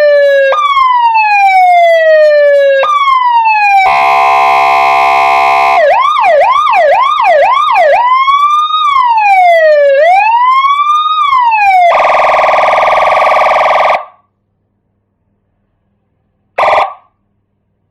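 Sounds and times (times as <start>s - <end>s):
electronic siren through loudspeaker: 0.0s - 14.2s, 16.6s - 17.1s.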